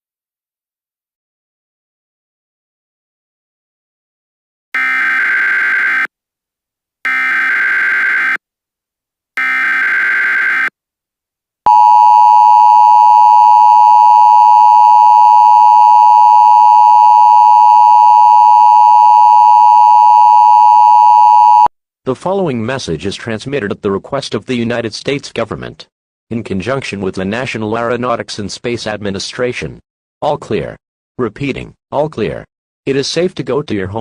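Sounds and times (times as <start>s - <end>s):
steady attention tone: 11.7s - 21.7s.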